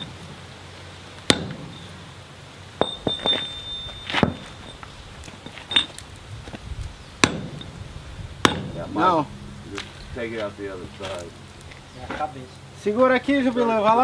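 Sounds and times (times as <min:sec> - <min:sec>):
hammer striking metal on anvil: 0:01.3 - 0:01.8, 0:07.2 - 0:07.8, 0:08.4 - 0:08.9
high metallic ring: 0:02.8 - 0:04.8.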